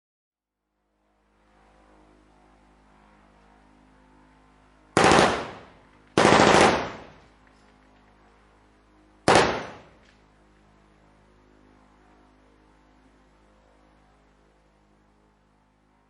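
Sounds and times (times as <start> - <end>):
machine gun bursts with echo: 5.0 - 7.2, 9.3 - 10.0.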